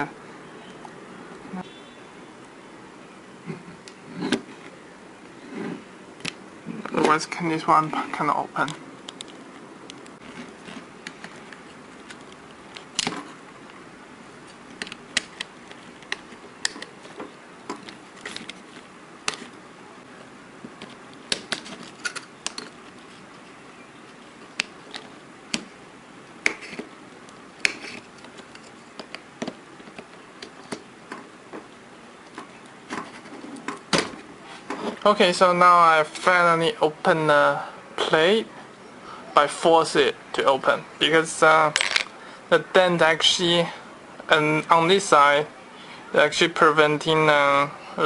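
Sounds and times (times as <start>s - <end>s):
tools clicking and scraping on metal: 20.8s - 23.5s, 27.6s - 29.2s.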